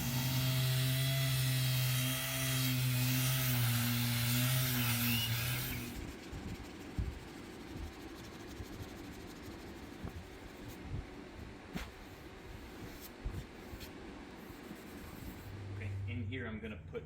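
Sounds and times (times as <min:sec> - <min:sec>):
power tool hissing and humming: 0:00.0 - 0:06.0.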